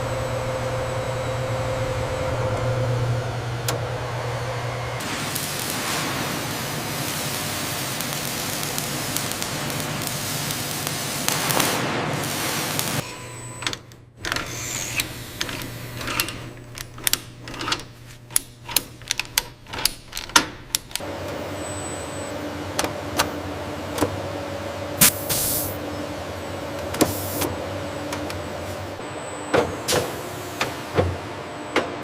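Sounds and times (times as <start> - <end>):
low machine hum: 0.0 - 10.7.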